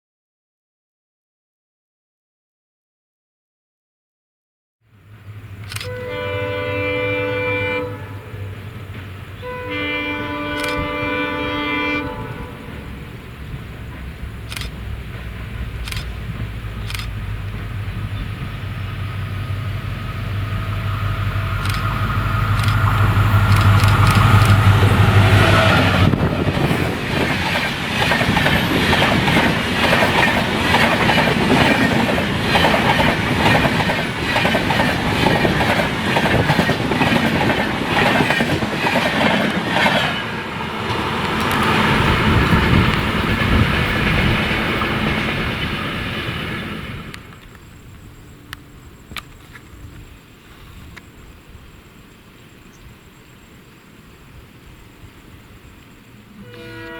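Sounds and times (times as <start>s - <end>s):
diesel locomotive engine drone: 4.9s - 52.8s, 55.0s - 56.9s
train wheels clattering over rail joints: 13.1s - 47.7s.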